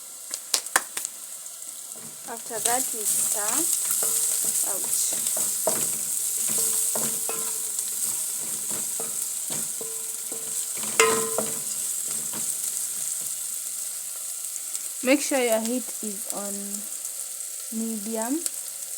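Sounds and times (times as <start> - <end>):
onions sizzling in oil: 0.0 - 18.9
spoon clinking against pot: 3.0 - 13.3.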